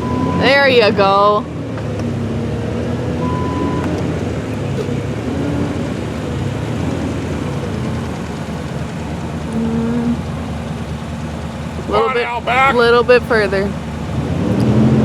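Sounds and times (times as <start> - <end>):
engines rumbling under load: 0.0 - 15.0
short high beep: 3.2 - 3.9.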